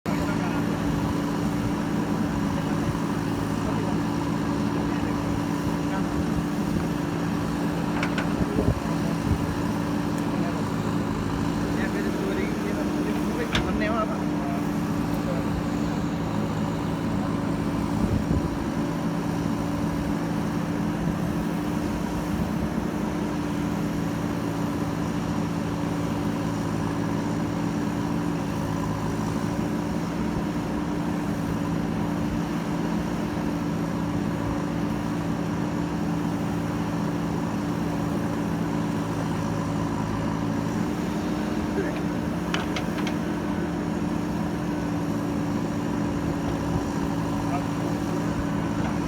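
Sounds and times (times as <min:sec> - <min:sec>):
diesel engine running: 0:00.0 - 0:49.0.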